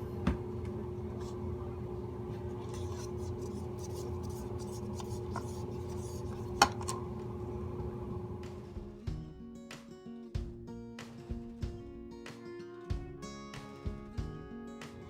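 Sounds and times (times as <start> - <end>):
stick scraping slime in a cup: 2.3 - 7.1.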